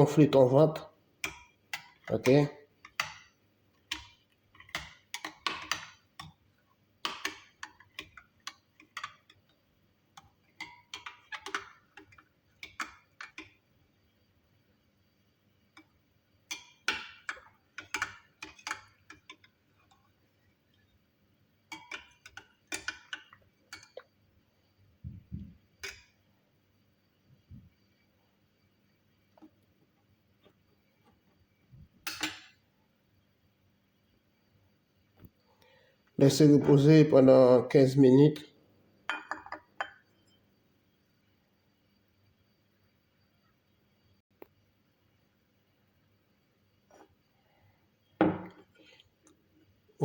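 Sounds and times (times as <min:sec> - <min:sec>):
kitchen utensils clicking: 0:21.7 - 0:24.0.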